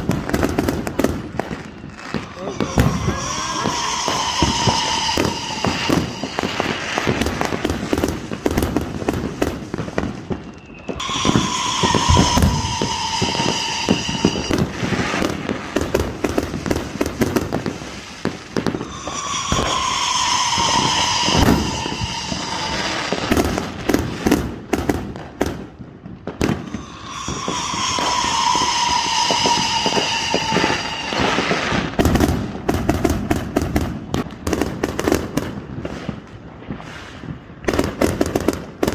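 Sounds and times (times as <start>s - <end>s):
descending firework whistle: 0.0s - 38.9s
fireworks crackling and banging: 0.0s - 38.9s.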